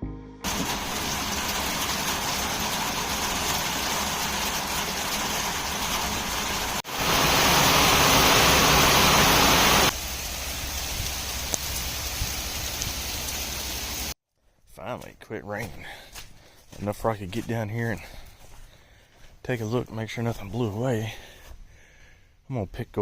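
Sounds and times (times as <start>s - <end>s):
steady rain falling: 0.4s - 14.2s.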